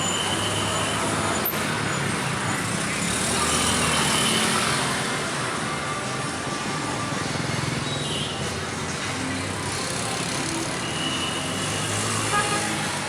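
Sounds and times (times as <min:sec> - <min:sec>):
street traffic noise: 0:00.0 - 0:13.0.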